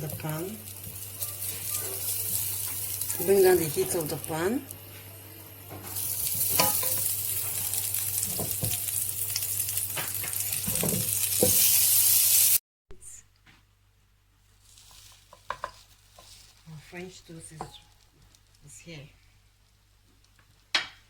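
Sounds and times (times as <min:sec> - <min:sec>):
butter sizzling in frying pan: 0:00.0 - 0:05.0, 0:05.8 - 0:12.6.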